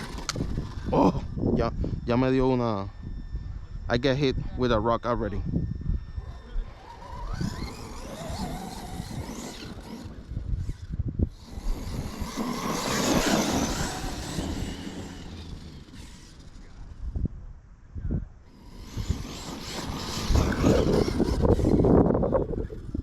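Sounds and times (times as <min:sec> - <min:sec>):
electric motor whining: 0:00.0 - 0:17.3, 0:18.4 - 0:23.0.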